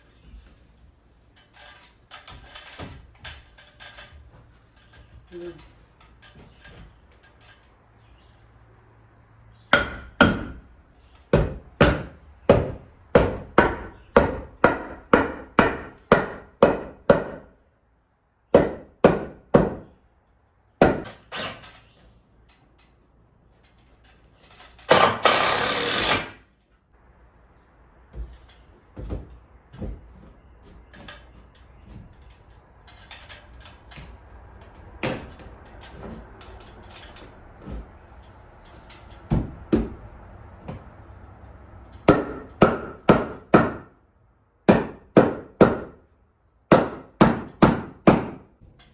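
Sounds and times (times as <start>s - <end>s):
hammer striking wood: 9.7s - 10.7s, 11.3s - 17.5s, 18.6s - 19.9s, 20.8s - 21.6s, 42.1s - 43.9s, 44.7s - 46.0s, 46.7s - 48.5s.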